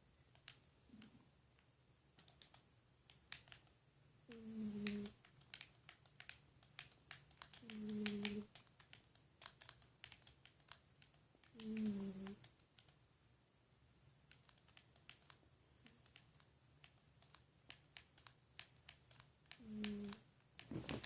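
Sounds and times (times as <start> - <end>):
faint clicks: 0.3 - 13.0, 14.3 - 21.0
cat snoring: 4.4 - 5.1, 11.6 - 12.4.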